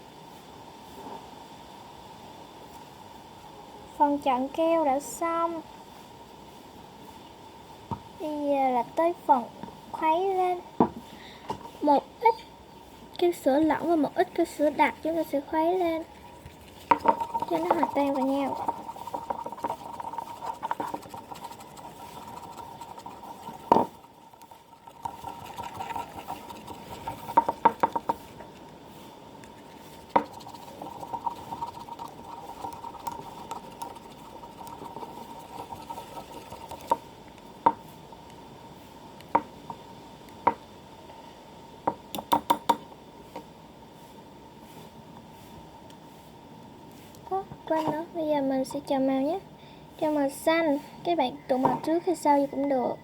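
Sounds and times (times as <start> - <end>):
faint steady hum: 0.0 - 53.0
brush stirring glue: 13.2 - 37.6
brush tapping container side: 16.2 - 28.6, 29.4 - 37.0.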